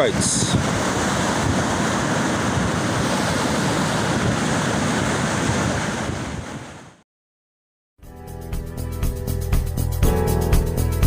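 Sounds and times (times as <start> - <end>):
ocean surf washing onto beach: 0.0 - 7.0
wind on microphone: 0.0 - 7.0.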